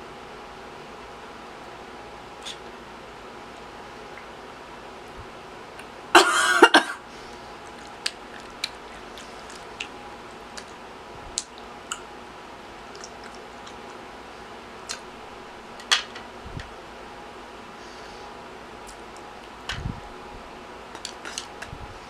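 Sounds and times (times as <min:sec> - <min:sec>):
faint steady hum: 0:00.0 - 0:22.0
person coughing: 0:06.2 - 0:07.0
wet mouth chewing clicks: 0:12.9 - 0:13.9.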